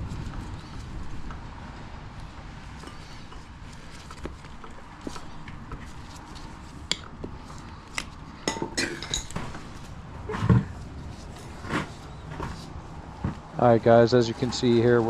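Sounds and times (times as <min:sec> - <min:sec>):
wrenches clinking on wheel rim: 0:02.8 - 0:09.9.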